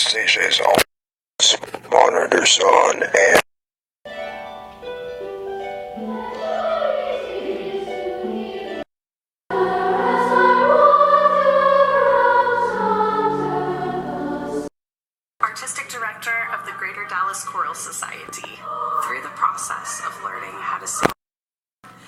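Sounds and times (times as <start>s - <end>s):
children's choir singing: 6.0s - 8.9s, 9.5s - 14.7s, 18.6s - 20.5s.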